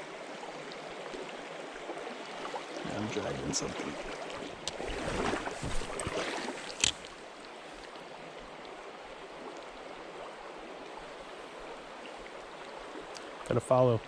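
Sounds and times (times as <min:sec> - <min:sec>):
creek water running: 0:00.0 - 0:14.0
rustling noise: 0:04.9 - 0:07.0.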